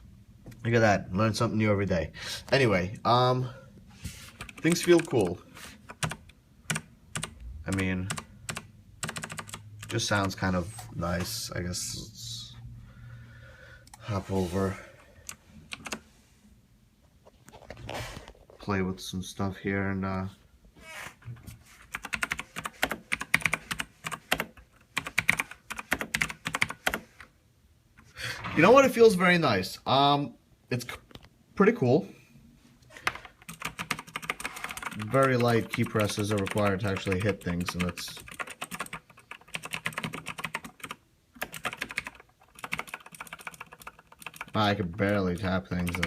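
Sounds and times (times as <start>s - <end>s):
typing on mechanical keyboard: 4.3s - 10.4s, 15.2s - 16.0s, 21.9s - 27.0s, 33.2s - 46.0s.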